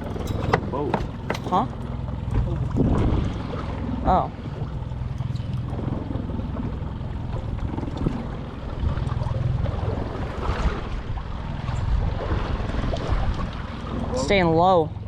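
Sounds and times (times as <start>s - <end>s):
boat motor running: 0.0s - 15.0s
wind noise: 2.3s - 3.4s.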